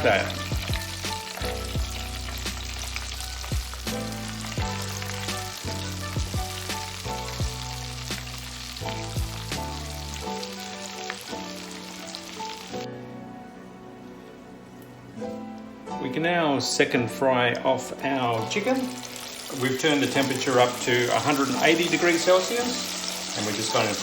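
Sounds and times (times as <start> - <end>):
chicken deep-frying in oil: 0.0 - 12.8, 18.0 - 24.0
background music: 0.0 - 24.0.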